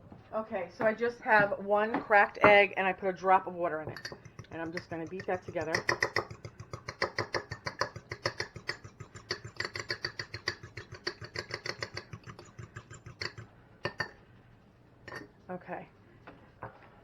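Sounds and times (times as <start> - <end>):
whisk clicking against bowl: 3.9 - 14.2.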